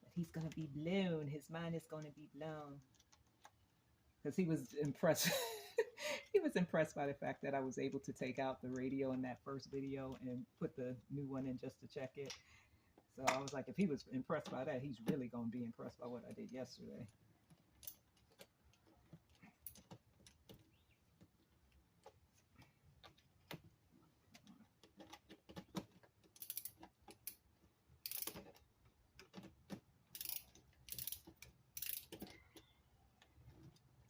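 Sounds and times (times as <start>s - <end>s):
hand tools clicking and clattering: 16.2s - 32.6s.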